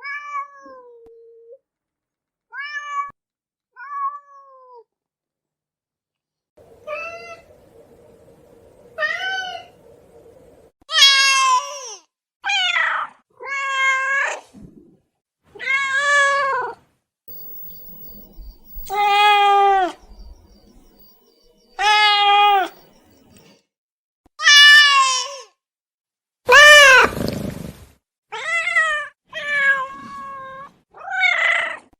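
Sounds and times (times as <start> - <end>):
cat meowing: 21.8 - 22.7.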